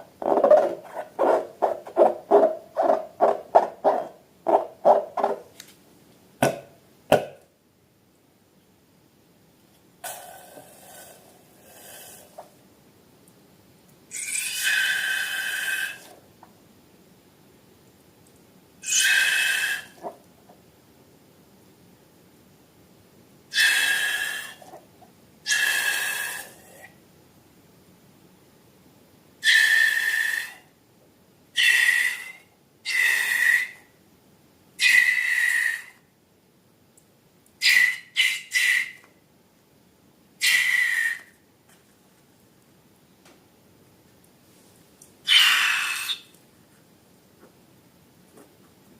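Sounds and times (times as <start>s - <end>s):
air squealing out of balloon: 14.1s - 16.1s, 18.8s - 20.1s, 23.5s - 24.8s, 25.5s - 26.6s, 29.4s - 30.6s, 31.6s - 33.8s, 34.8s - 36.0s, 37.6s - 39.0s, 40.4s - 41.3s, 45.3s - 46.3s.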